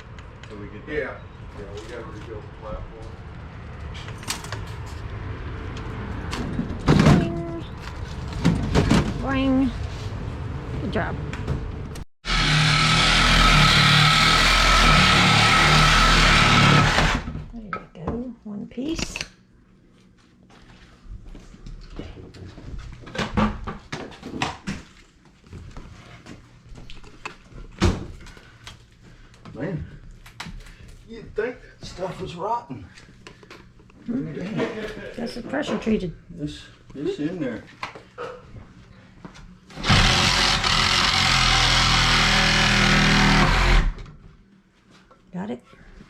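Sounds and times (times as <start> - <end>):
power tool motor running: 12.2 - 17.3, 39.7 - 44.0.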